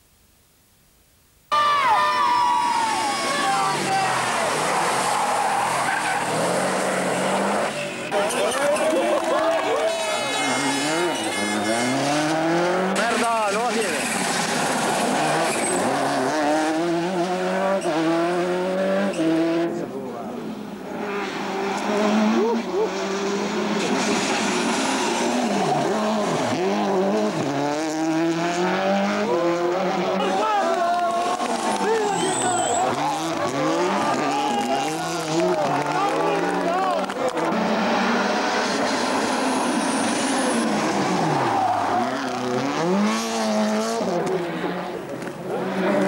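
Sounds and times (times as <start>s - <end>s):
rally car engine revving: 3.1s - 46.0s.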